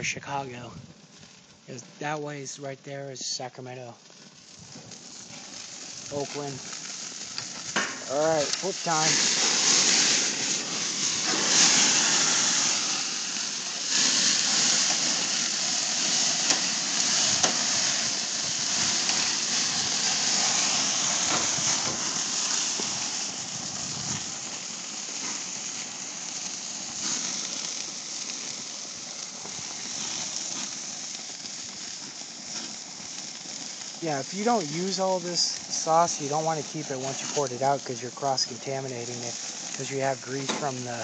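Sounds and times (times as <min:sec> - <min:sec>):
patties sizzling on a grill: 0:00.0 - 0:41.0.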